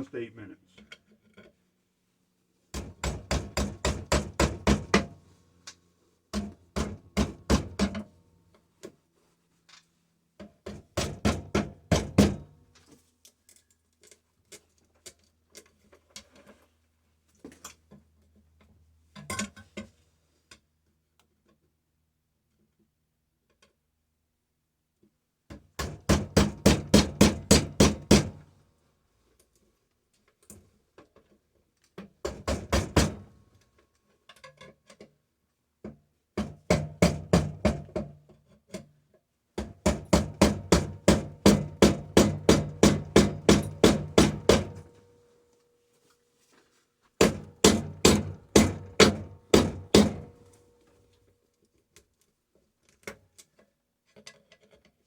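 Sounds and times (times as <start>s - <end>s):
rapid hammer blows on metal: 39.9s - 44.9s, 47.2s - 50.4s.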